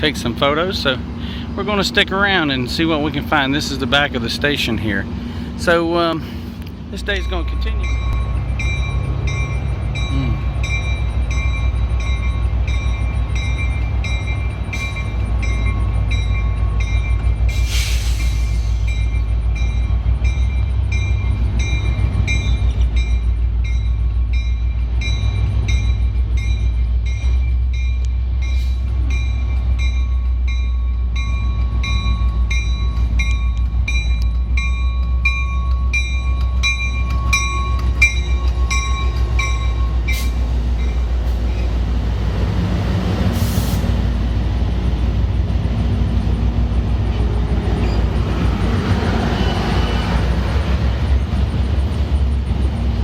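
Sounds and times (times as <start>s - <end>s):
train rumbling: 0.0s - 53.0s
bell ringing: 7.1s - 17.4s, 29.2s - 41.0s.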